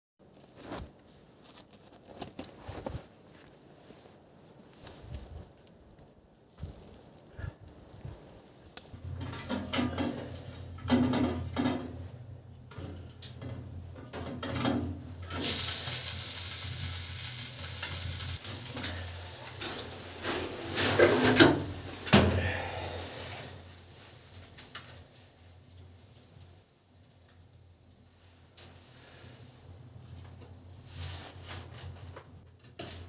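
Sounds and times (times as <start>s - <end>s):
utensils clinking and scraping pan: 9.0s - 12.1s, 12.7s - 22.3s
food sizzling in a pan: 15.3s - 20.7s.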